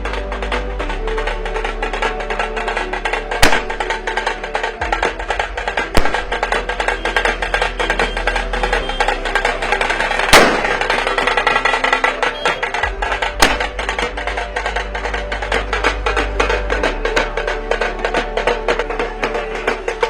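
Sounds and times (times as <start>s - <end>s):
firecrackers popping: 0.0s - 20.0s
loud single bangs: 3.4s - 3.8s, 10.3s - 11.1s, 13.4s - 13.8s.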